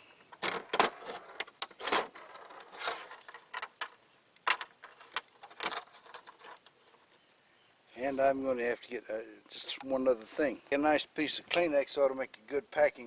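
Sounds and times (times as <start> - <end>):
ramrod scraping in cannon barrel: 0.9 - 3.7.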